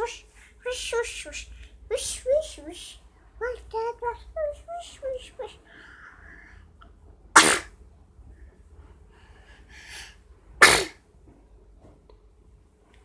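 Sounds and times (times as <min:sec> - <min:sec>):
girl sneezing: 0:07.4 - 0:07.7, 0:10.6 - 0:11.0
quick breath in: 0:09.2 - 0:10.2.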